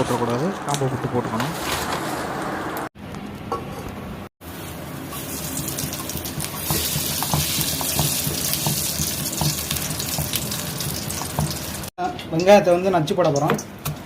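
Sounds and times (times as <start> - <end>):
oil sizzling in a pan: 4.4 - 11.9.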